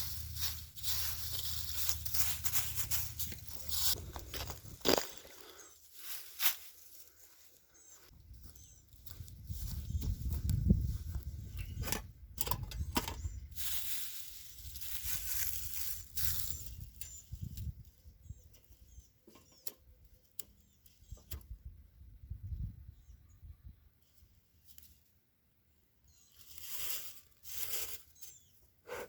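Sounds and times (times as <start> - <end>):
dry pine needles rustling: 0.0 - 11.6, 13.2 - 18.2, 26.2 - 28.6.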